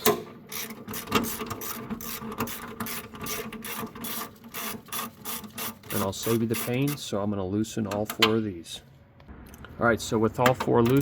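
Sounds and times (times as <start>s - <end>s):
hand ratchet clicking: 0.0s - 7.0s.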